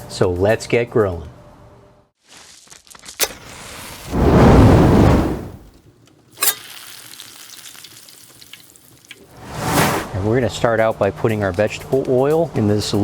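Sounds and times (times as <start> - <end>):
hot oil sizzling: 2.4 - 5.7, 6.4 - 9.4.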